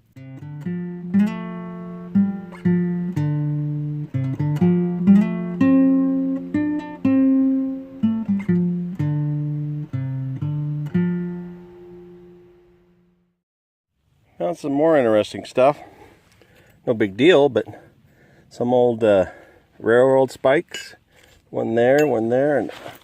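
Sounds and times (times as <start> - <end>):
acoustic guitar picking: 0.0 - 13.1.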